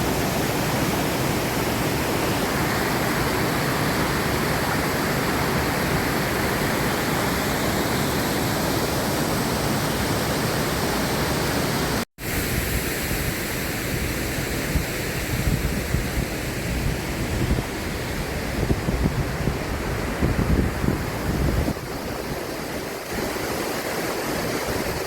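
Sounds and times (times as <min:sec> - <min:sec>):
sea surf: 0:00.0 - 0:25.0
waterfall rushing: 0:00.0 - 0:25.0
wind buffeting microphone: 0:14.7 - 0:25.0.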